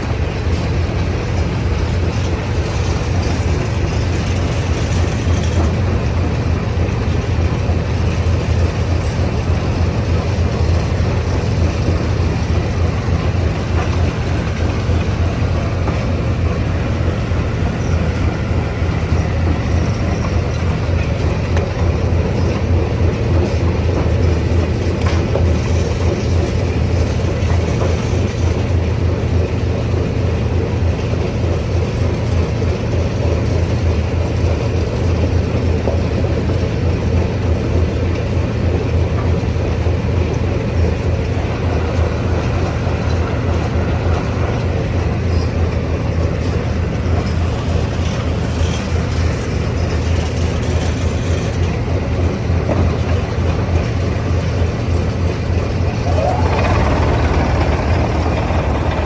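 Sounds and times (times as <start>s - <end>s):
coarse mechanical noise: 40.0s - 59.0s
deep low hum: 55.9s - 59.0s.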